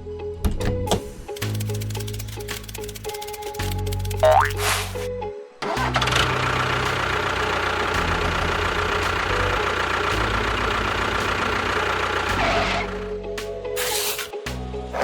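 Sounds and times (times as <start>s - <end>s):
engine idling: 5.8s - 13.3s.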